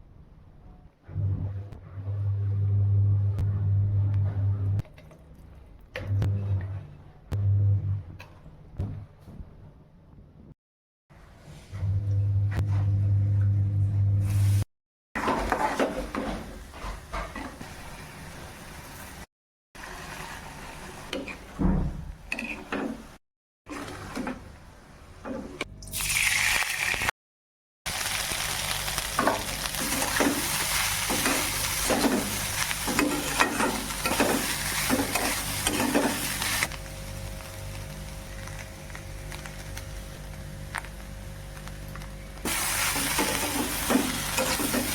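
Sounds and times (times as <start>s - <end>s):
food sizzling in a pan: 27.9s - 41.1s, 42.4s - 44.9s.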